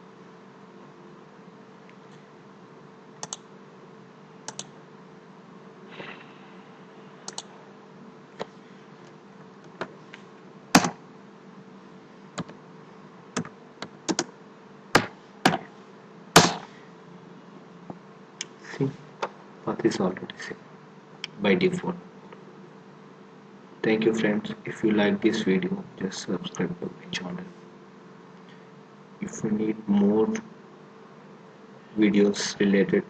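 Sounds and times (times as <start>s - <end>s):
faint steady hum: 0.0s - 33.0s
mouse and keyboard clicks: 3.2s - 3.4s, 4.5s - 4.7s.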